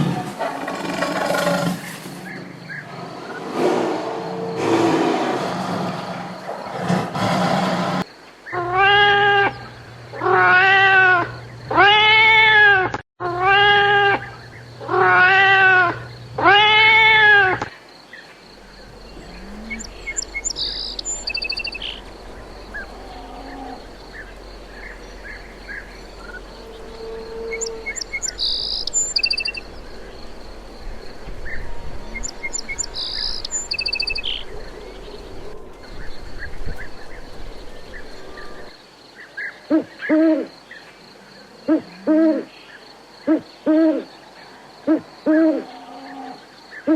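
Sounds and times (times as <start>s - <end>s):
small birds chirping: 14.1s - 40.0s.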